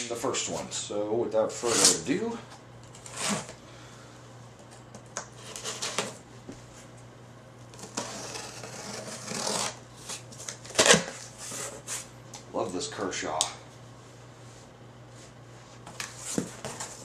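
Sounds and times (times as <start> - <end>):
knife cutting cardboard and tape: 1.6 - 2.0, 2.9 - 3.5, 5.4 - 6.2, 7.7 - 12.1.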